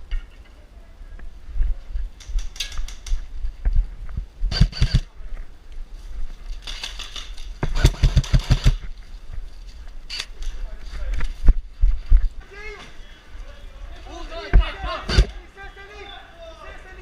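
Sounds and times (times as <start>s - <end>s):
low microphone rumble: 0.0s - 2.2s, 3.2s - 6.5s
airsoft rifle firing bursts: 4.5s - 5.1s, 6.8s - 8.8s, 15.0s - 15.3s.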